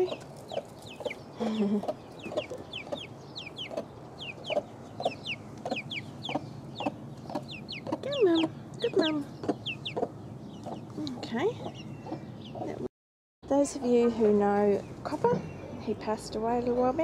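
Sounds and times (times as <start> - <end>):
chicks peeping: 0.0 - 12.9
hen clucking: 0.0 - 12.9.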